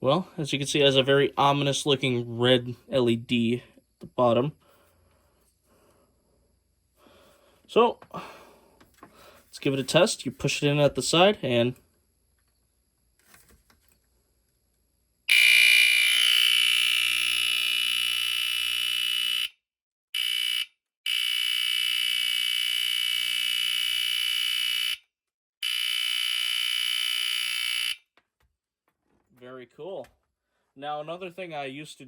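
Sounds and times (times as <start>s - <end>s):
smoke alarm steady tone: 15.3s - 19.6s, 20.2s - 25.0s, 25.6s - 28.0s.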